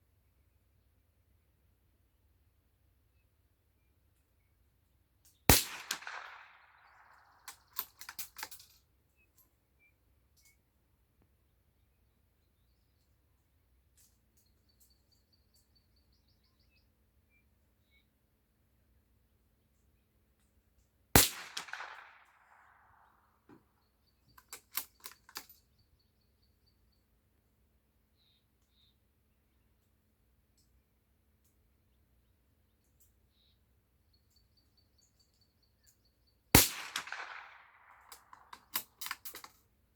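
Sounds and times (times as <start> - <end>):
rifle shot with echo: 5.5 - 7.4, 21.2 - 23.1, 36.6 - 38.6.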